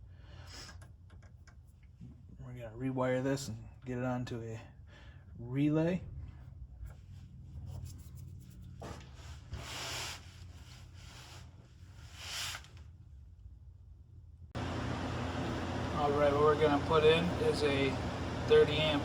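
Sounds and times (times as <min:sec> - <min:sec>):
steady low hum: 0:13.3 - 0:19.0.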